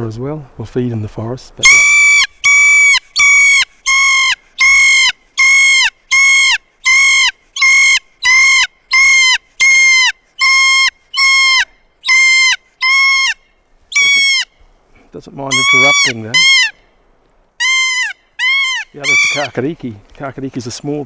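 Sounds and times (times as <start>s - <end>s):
parrot calling shrilly: 1.6s - 14.6s, 15.5s - 16.8s, 17.6s - 19.6s.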